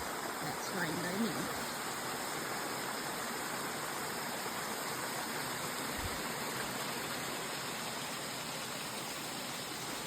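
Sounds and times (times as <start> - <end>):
creek water rushing: 0.0 - 10.0.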